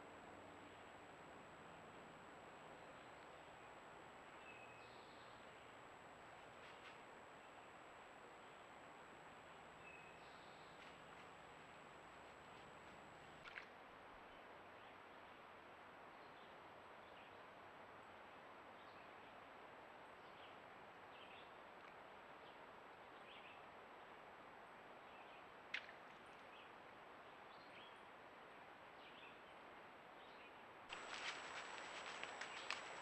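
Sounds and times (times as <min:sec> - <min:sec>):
microphone hiss: 0:00.0 - 0:25.7, 0:26.4 - 0:33.0.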